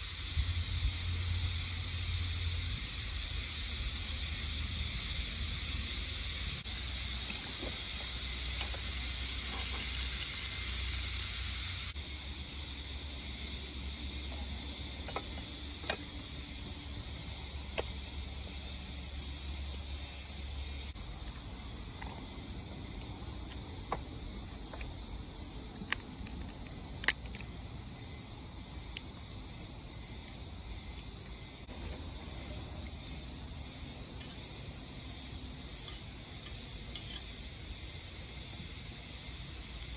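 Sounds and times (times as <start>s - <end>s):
high-pitched hiss: 0.0s - 39.9s.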